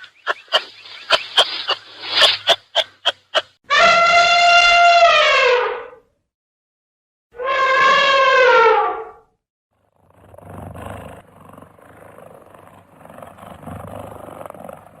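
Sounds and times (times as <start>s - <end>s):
cat purring: 10.8s - 15.0s.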